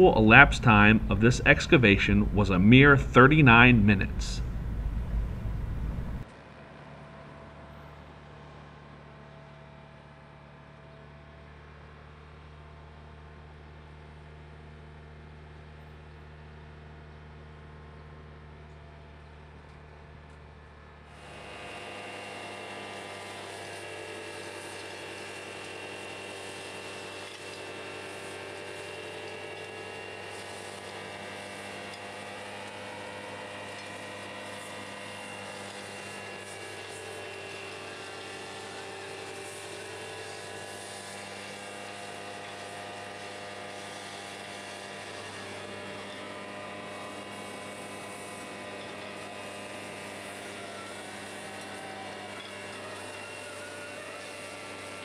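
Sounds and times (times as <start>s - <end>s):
excavator truck engine humming: 0.0s - 6.2s.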